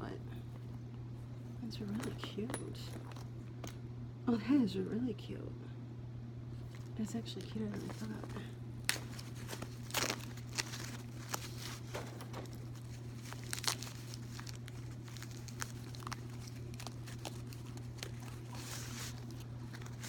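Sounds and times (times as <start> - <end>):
steady low hum: 0.0 - 20.0
packaging rustling and crinkling: 6.6 - 20.0.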